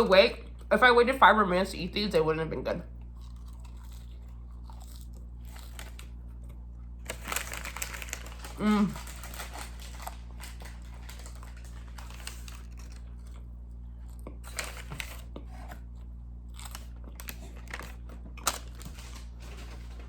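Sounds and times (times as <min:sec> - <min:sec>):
low electrical hum: 0:00.0 - 0:20.0
person chewing and eating: 0:02.9 - 0:20.0
paper packaging crinkling: 0:07.0 - 0:13.4, 0:14.4 - 0:15.8, 0:16.6 - 0:20.0.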